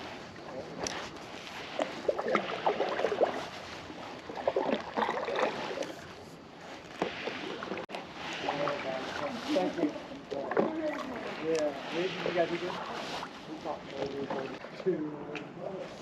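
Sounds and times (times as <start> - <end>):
water splashing against kayak: 0.0 - 15.0.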